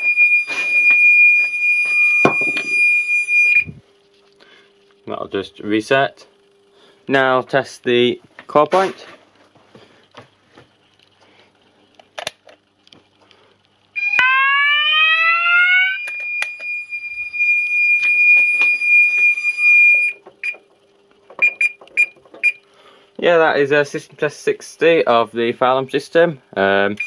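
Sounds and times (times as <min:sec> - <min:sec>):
fire alarm sounder tone: 0:00.0 - 0:03.8, 0:14.0 - 0:20.6, 0:21.4 - 0:22.6.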